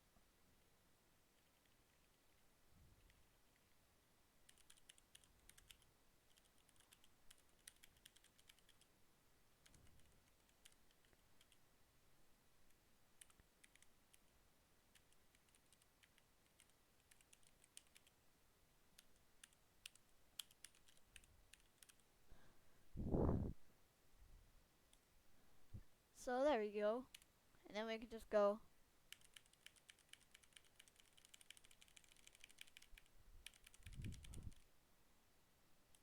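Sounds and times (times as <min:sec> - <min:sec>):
mechanical keyboard typing: 0:04.5 - 0:08.9, 0:09.6 - 0:11.6, 0:13.2 - 0:14.2, 0:14.9 - 0:18.2, 0:19.0 - 0:22.0, 0:29.1 - 0:34.6.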